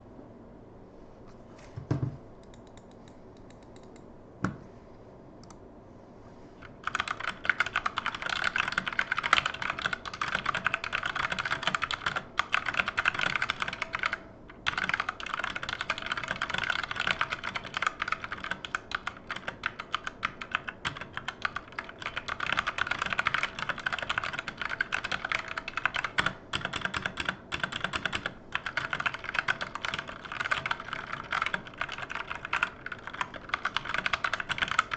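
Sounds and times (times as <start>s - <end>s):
mechanical keyboard typing: 6.8s - 34.9s.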